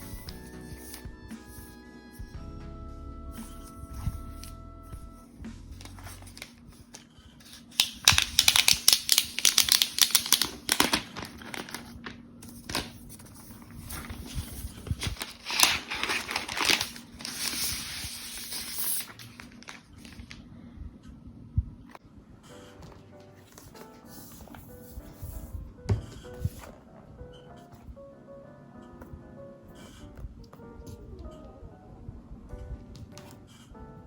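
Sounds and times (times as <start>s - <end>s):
soft rustle of packaging: 5.8s - 20.6s
packaging tearing and crinkling: 7.5s - 13.1s, 13.7s - 20.4s.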